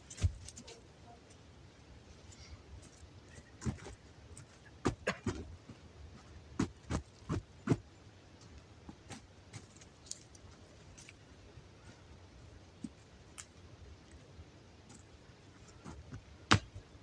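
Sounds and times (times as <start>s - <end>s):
short sharp knocks and crunches: 0.0s - 0.6s, 3.6s - 5.8s, 6.6s - 7.8s, 15.8s - 16.9s.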